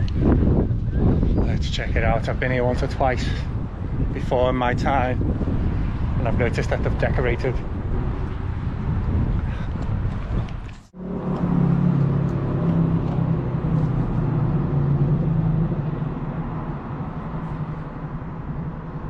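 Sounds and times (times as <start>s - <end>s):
street noise: 0.0s - 19.0s
vehicle engine running: 5.2s - 19.0s.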